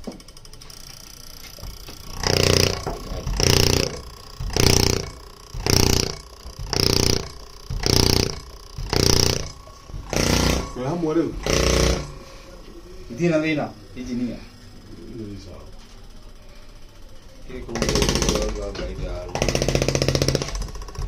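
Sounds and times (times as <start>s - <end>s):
injector spraying buzzing hiss: 1.6s - 12.4s.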